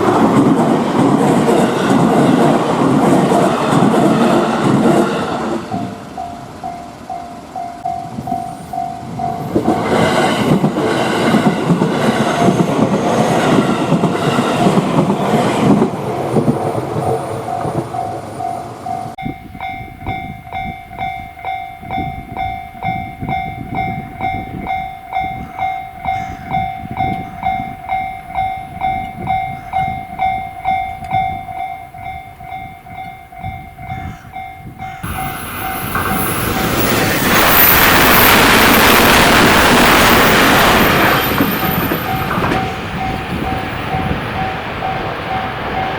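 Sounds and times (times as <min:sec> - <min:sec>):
electric train running past: 0:00.0 - 0:45.9
level-crossing bell ringing: 0:05.7 - 0:09.9, 0:16.7 - 0:45.9.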